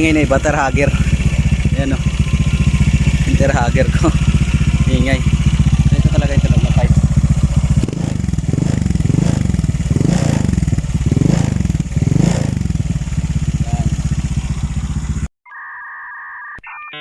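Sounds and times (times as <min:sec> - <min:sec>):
scooter engine revving: 0:00.0 - 0:15.3
tire hugger rattling: 0:00.0 - 0:15.3
electronic tones and beeps: 0:15.4 - 0:17.0.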